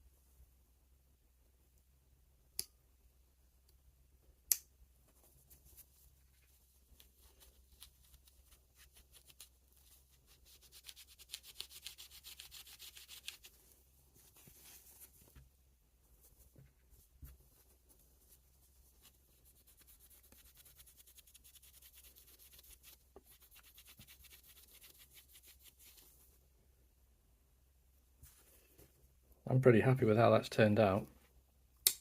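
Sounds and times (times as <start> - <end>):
rapid rubbing strokes: 5.2 - 15.3, 16.2 - 26.4.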